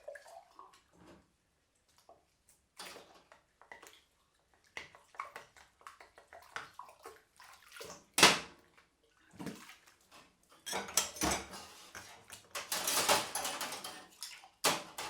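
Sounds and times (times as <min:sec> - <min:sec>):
utensils washed in water splashing: 0:10.6 - 0:15.0.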